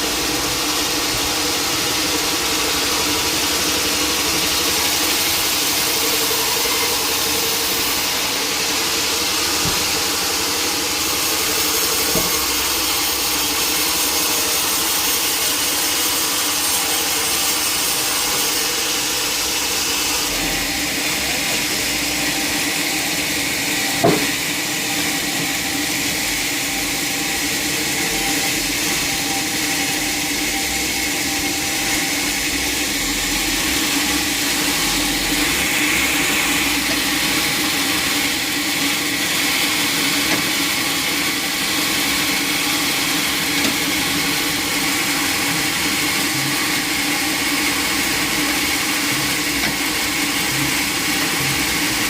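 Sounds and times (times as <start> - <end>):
sawmill machinery drone: 0.0 - 52.0
sharp knock: 24.0 - 24.3.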